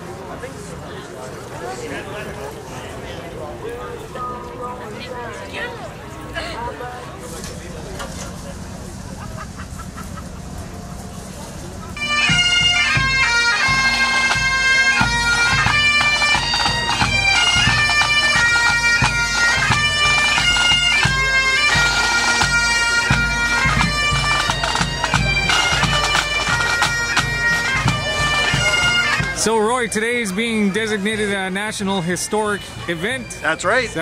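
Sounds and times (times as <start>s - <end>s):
bagpipes playing a tune: 12.0s - 34.0s.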